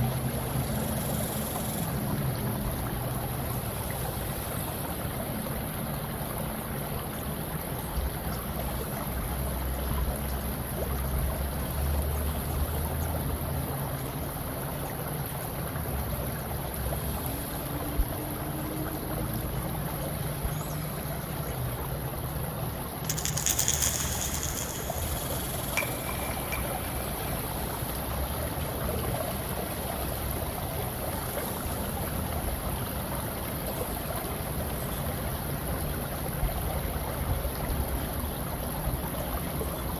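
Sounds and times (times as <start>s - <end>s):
flowing water: 0.0s - 39.9s.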